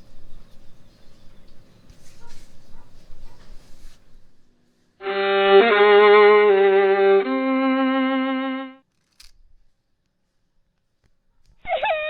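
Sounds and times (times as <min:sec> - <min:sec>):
violin held notes with vibrato: 0:05.0 - 0:08.8.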